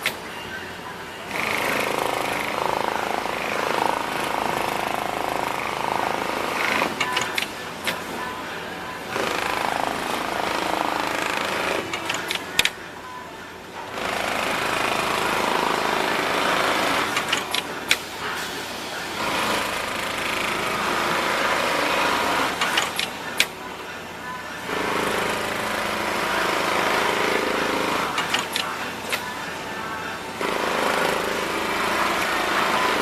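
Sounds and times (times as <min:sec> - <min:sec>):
sharp machine clicks: 0:06.5 - 0:08.0, 0:09.1 - 0:12.8, 0:13.9 - 0:18.1, 0:19.4 - 0:23.5, 0:25.0 - 0:29.4
sewing machine stitching fast: 0:13.9 - 0:18.0.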